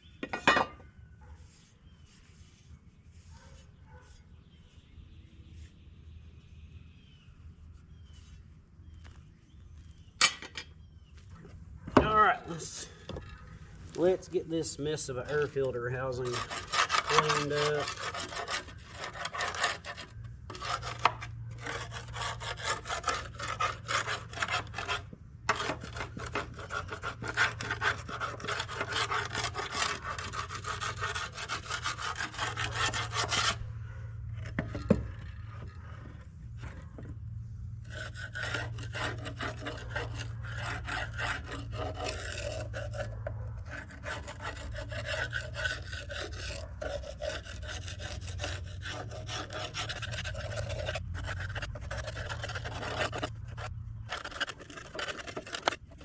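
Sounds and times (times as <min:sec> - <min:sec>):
scrubbing and scraping on metal: 0:00.0 - 0:04.8, 0:07.6 - 0:56.0.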